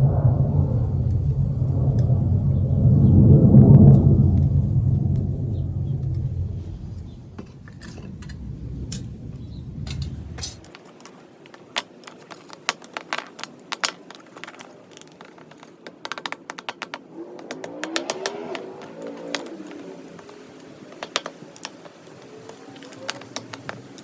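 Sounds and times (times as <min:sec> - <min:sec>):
low rumble: 0:00.0 - 0:10.7.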